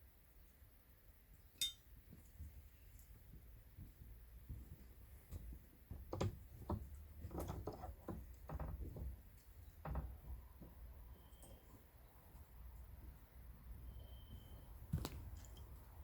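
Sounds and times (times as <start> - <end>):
light knocks and taps: 5.3 - 10.8.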